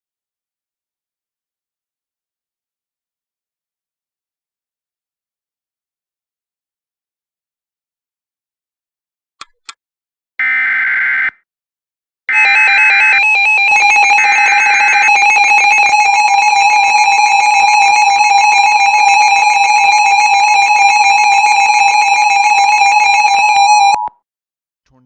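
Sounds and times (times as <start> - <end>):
two-tone alarm signal: 12.3 - 24.2.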